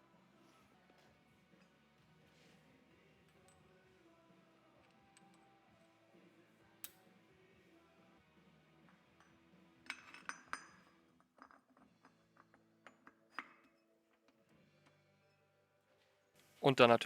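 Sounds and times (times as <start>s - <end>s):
metallic clinks of engine parts: 8.9s - 15.4s.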